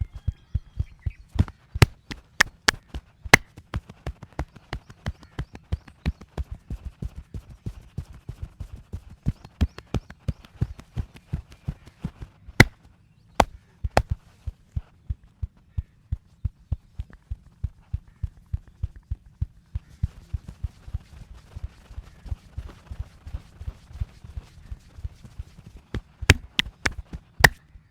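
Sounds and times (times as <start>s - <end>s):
wooden sticks thudding on body: 1.4s - 3.4s, 26.3s - 27.6s.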